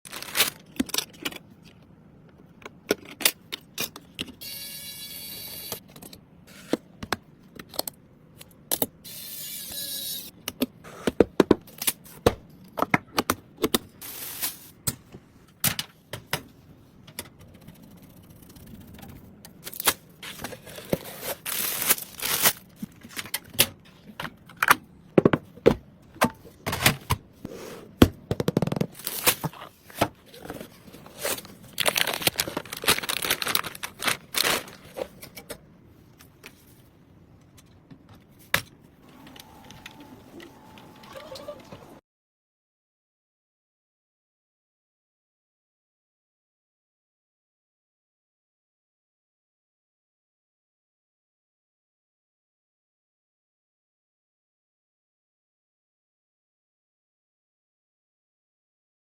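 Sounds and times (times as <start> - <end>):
scraping whirring sound: 39.0 - 42.0.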